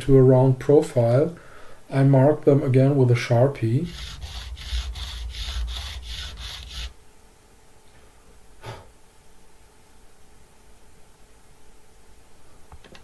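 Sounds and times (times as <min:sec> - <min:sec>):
rubbing on guitar frets: 0:03.6 - 0:07.0.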